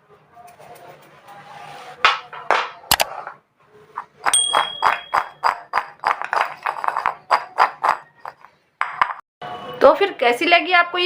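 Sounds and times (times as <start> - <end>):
metallic ringing ding: 4.3 - 5.4
metal kitchenware knocking: 4.3 - 9.2.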